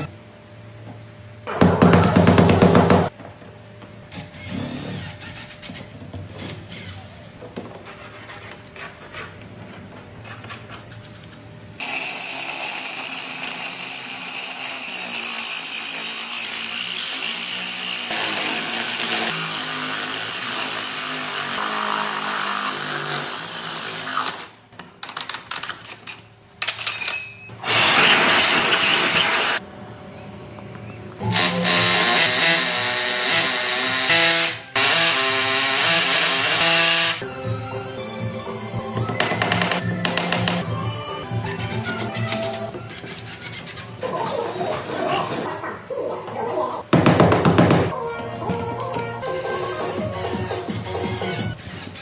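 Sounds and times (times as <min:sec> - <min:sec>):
power drill whining: 0:27.6 - 0:29.6, 0:31.2 - 0:37.2
background music: 0:37.2 - 0:43.0, 0:47.9 - 0:51.6.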